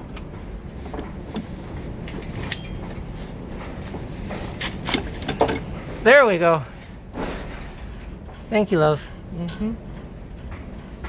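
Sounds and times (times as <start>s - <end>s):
metal tools clicking and knocking: 4.7s - 5.7s.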